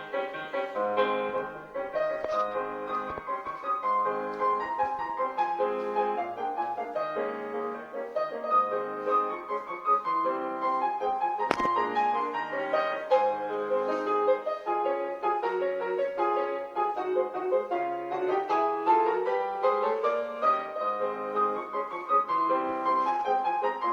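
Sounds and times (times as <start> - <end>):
solo piano classical music: 0.0 - 23.9
sharp click: 11.5 - 12.0.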